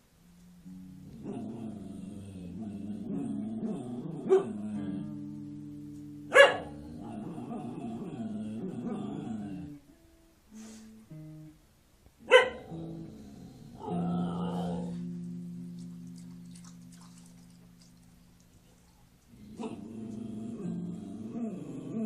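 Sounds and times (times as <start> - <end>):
dog barking: 4.3 - 4.6, 6.3 - 6.8, 12.2 - 12.7.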